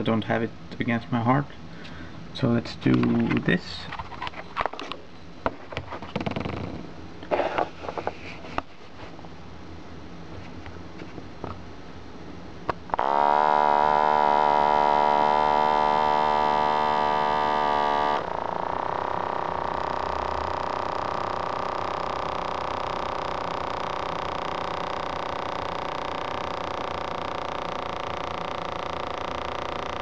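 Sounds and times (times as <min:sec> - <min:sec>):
small air pump buzzing whine: 0:12.6 - 0:30.0.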